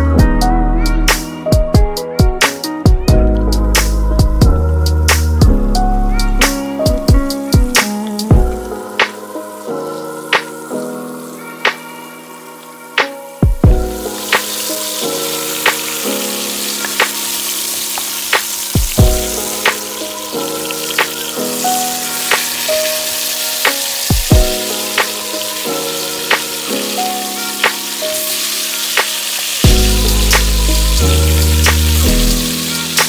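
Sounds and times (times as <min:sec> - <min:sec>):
background music with a beat: 0:00.0 - 0:12.3, 0:12.9 - 0:33.0
food frying in oil: 0:06.6 - 0:33.0.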